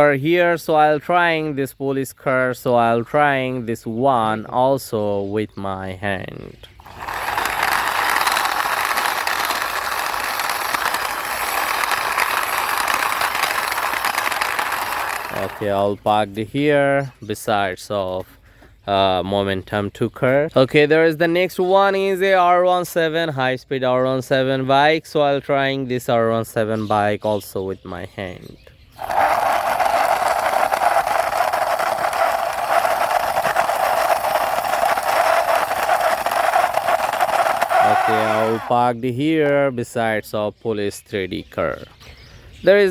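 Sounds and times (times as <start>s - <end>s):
toy car wheels rattling: 6.7s - 16.3s, 29.0s - 38.8s.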